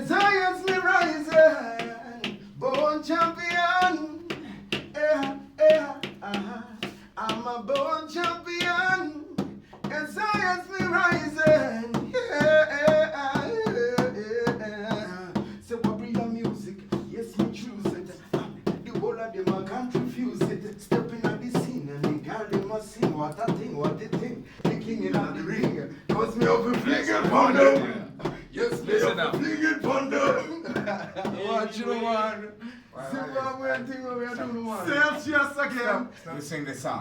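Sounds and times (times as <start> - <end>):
hand claps: 0.0 - 12.2
man singing: 0.0 - 36.4.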